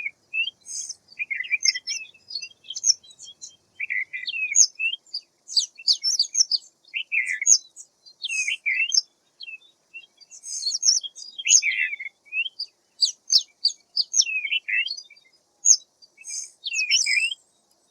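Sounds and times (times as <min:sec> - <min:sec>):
bird twittering song: 0:00.0 - 0:17.9.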